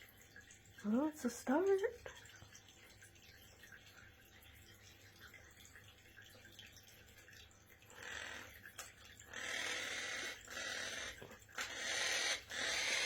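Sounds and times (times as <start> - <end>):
water dripping and trickling: 0.0 - 13.0.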